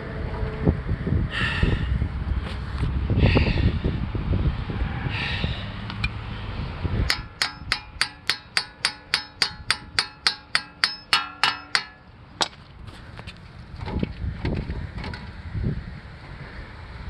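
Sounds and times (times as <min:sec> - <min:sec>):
hammer striking metal: 0:07.1 - 0:12.1.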